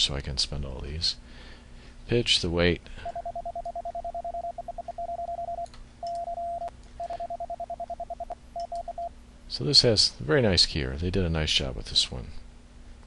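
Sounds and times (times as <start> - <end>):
morse code beeps: 3.0 - 9.1.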